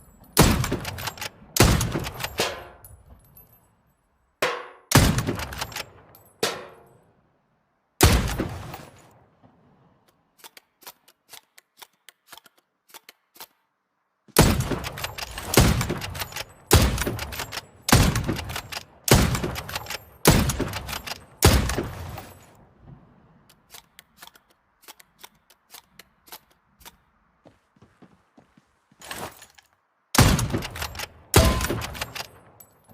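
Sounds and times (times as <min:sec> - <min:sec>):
rifle gunshots with ringing tail: 0:00.4 - 0:02.8, 0:04.6 - 0:06.8, 0:14.4 - 0:22.2, 0:30.2 - 0:32.6.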